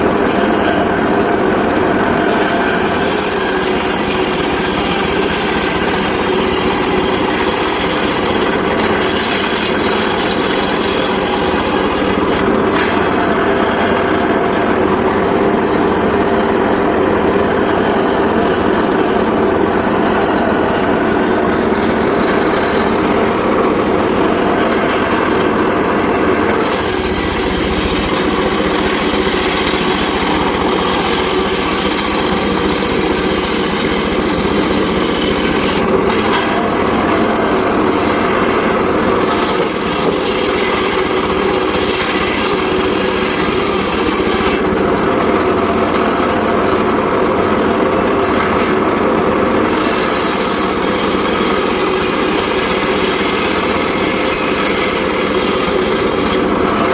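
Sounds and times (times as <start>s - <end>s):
circular saw cutting wood: 0.0s - 56.9s
high hissing of blade: 26.6s - 35.7s.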